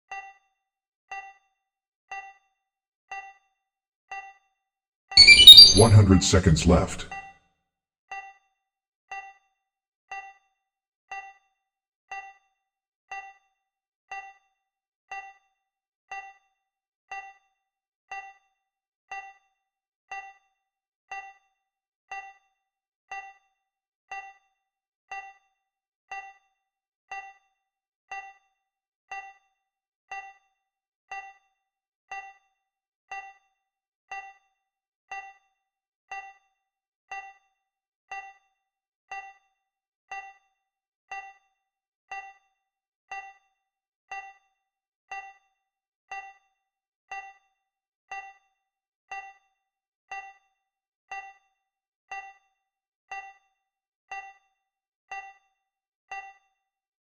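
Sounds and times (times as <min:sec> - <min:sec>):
bright timer ding: 0:05.2 - 0:07.1.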